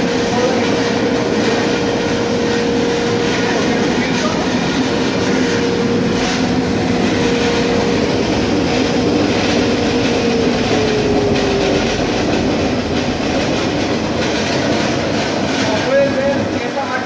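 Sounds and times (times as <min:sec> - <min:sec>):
disc sander running: 0:00.0 - 0:15.6.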